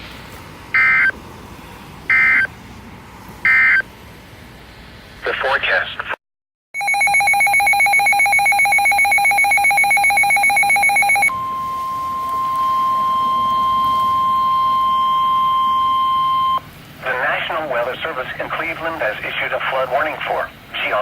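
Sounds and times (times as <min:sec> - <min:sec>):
electronic alarm beeping rapidly: 0:00.8 - 0:01.1, 0:02.1 - 0:02.5, 0:06.8 - 0:16.6
steady alarm tone: 0:06.8 - 0:16.7.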